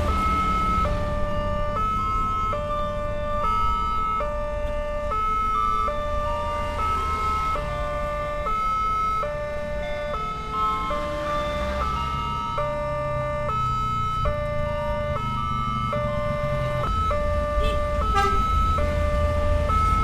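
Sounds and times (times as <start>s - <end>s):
two-tone level crossing siren: 0.0s - 20.0s.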